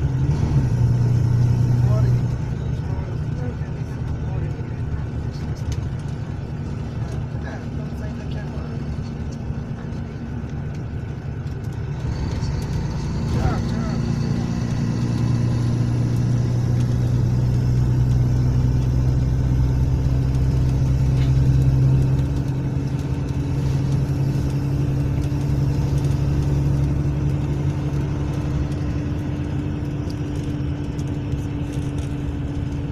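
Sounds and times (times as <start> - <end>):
diesel engine humming: 0.0 - 32.9.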